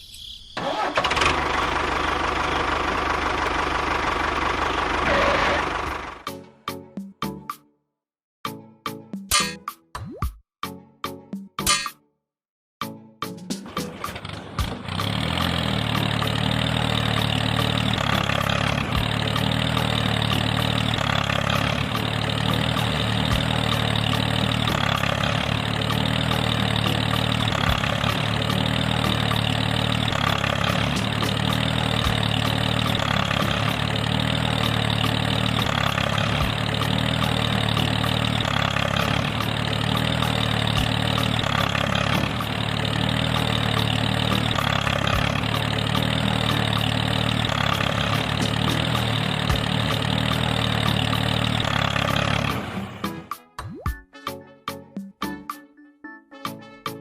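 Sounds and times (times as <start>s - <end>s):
engine idling: 0.6s - 6.4s, 13.6s - 53.4s.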